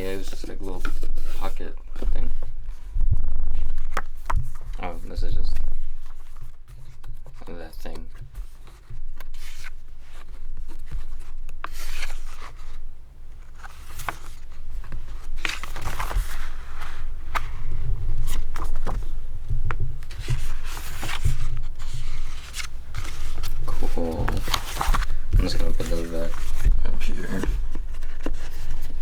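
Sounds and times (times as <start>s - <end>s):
cardboard box rustling and scraping: 8.0s - 29.0s
low thumps: 14.4s - 29.0s.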